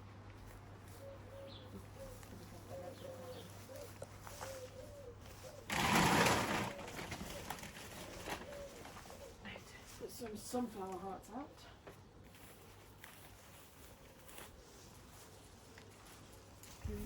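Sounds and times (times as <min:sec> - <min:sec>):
pigeon cooing: 0:00.9 - 0:09.6
loud rattling rustle: 0:05.3 - 0:09.3.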